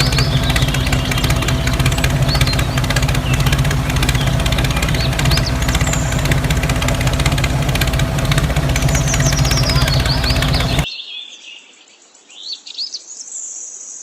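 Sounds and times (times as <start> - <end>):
small motor humming: 0.0 - 10.8.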